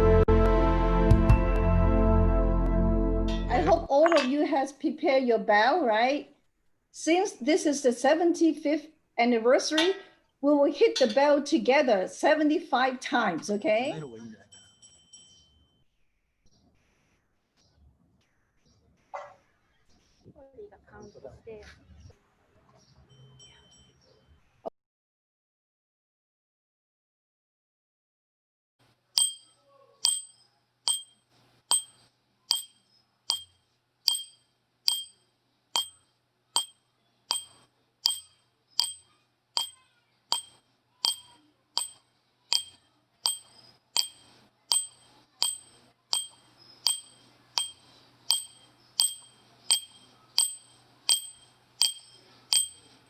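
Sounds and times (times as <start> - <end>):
small bell ringing: 14.4 - 15.8, 23.1 - 24.0, 29.2 - 35.2, 35.8 - 36.0, 36.6 - 53.0.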